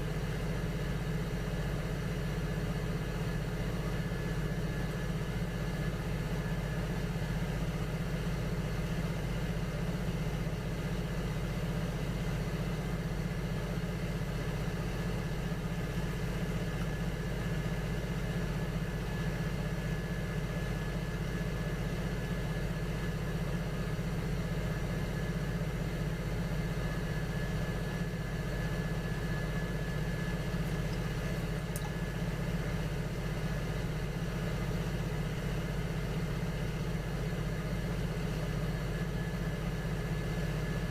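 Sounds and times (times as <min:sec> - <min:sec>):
potter's wheel motor hum: 0:26.4 - 0:35.0.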